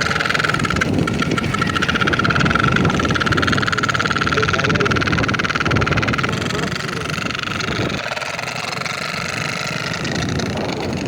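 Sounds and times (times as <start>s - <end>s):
buzzing toy trumpet drone: 0.0s - 11.0s.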